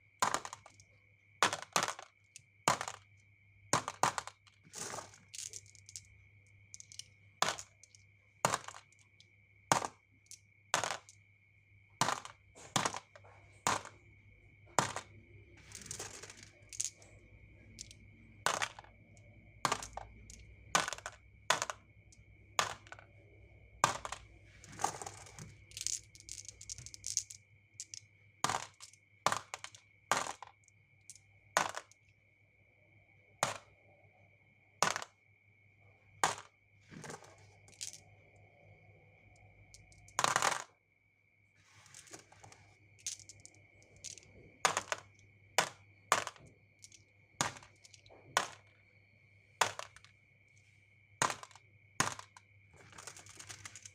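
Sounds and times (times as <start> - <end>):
marbles clacking down track: 3.8 - 6.1, 6.7 - 9.0, 9.7 - 11.1, 14.8 - 19.0, 19.6 - 21.9, 23.8 - 30.5, 43.0 - 48.6.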